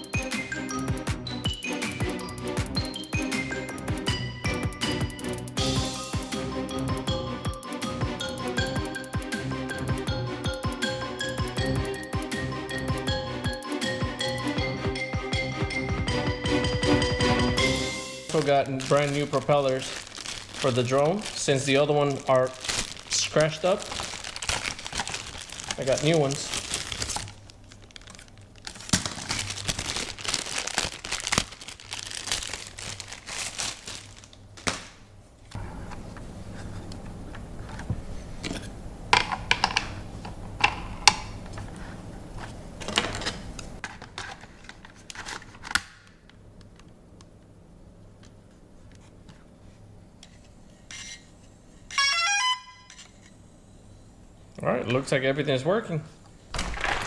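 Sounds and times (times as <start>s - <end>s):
rising electronic beeps: 0.0s - 18.3s
plastic packaging crinkling: 18.3s - 35.0s.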